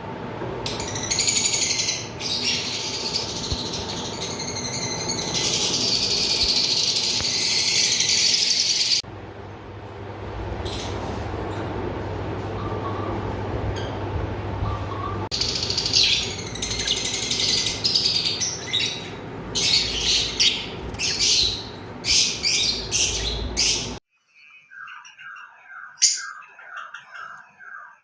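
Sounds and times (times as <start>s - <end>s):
lovebirds chirping: 0.7s - 9.0s, 14.6s - 28.0s.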